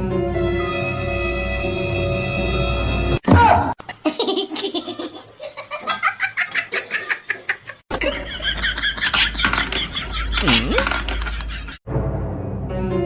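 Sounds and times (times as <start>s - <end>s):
person laughing hard: 4.0s - 11.8s.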